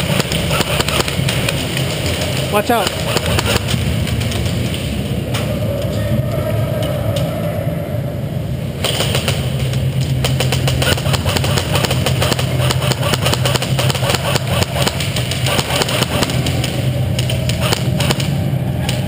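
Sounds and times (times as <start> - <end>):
rapid clicks of airsoft rifle: 0.0 - 4.8, 8.8 - 18.4.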